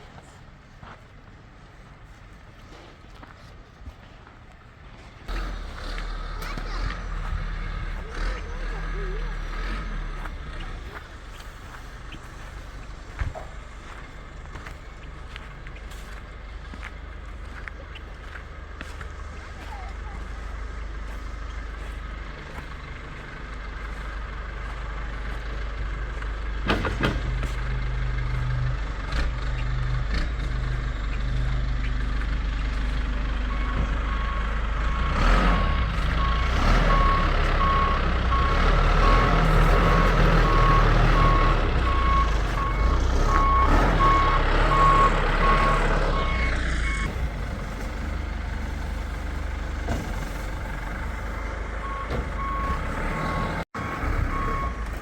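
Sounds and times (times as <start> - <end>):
truck engine rumble: 0.0 - 55.0
truck backup alarm beeping: 29.5 - 55.0.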